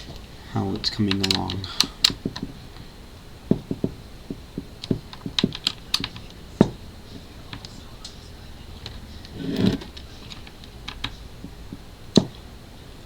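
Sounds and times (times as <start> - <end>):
computer keys clicking: 0.0 - 2.9, 4.6 - 8.2, 8.8 - 12.4.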